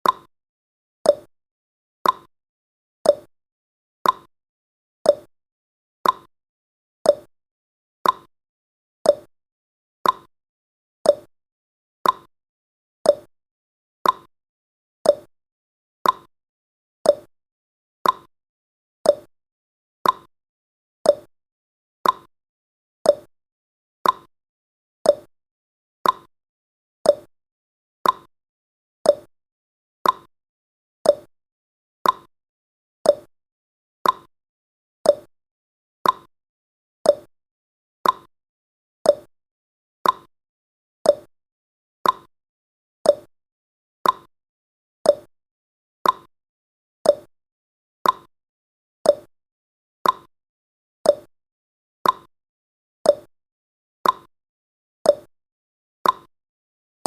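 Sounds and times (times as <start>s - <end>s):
clock ticking: 18.0s - 18.3s, 34.0s - 34.3s, 42.0s - 42.3s, 50.0s - 50.3s.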